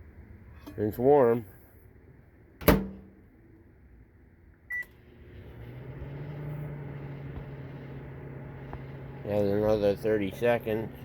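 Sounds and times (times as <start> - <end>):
microwave keypad beep: 4.7 - 4.9
microwave oven humming: 4.7 - 11.0.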